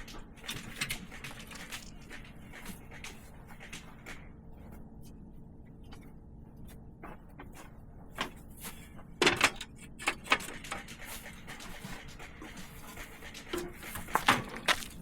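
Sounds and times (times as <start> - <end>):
sharp knocks and clatters: 9.2 - 15.0.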